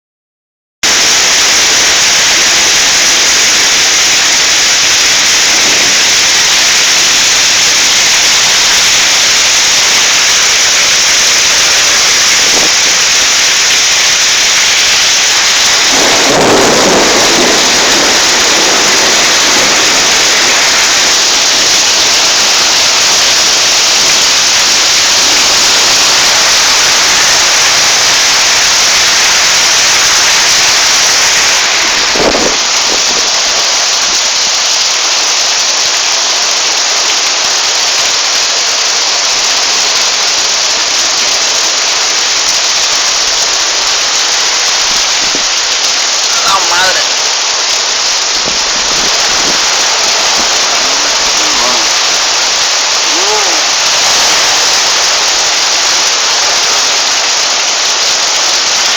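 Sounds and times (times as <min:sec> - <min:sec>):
heavy rain: 0:00.8 - 0:58.9
thunder rolling: 0:00.9 - 0:34.4, 0:48.2 - 0:58.9.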